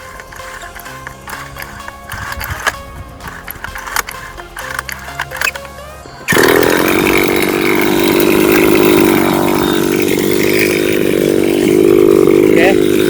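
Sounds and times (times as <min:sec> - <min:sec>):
music: 0:00.0 - 0:13.0
rc car two-stroke engine running: 0:00.0 - 0:13.0.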